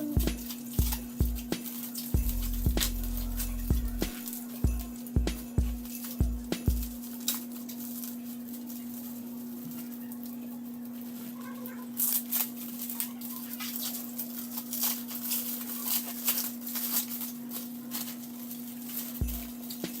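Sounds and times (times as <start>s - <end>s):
plastic packaging crinkling: 0.0s - 20.0s
low hum: 2.2s - 7.0s.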